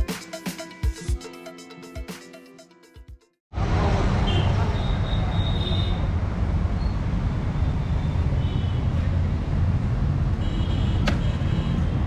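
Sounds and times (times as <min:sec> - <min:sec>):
vehicle traffic rumble: 0:03.5 - 0:12.0.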